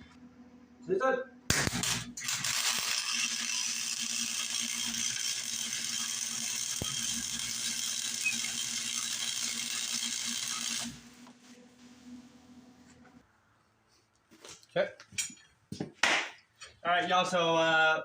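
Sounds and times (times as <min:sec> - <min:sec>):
low electrical hum: 0:00.0 - 0:04.2, 0:10.8 - 0:15.5
welding arc hissing: 0:01.5 - 0:11.0.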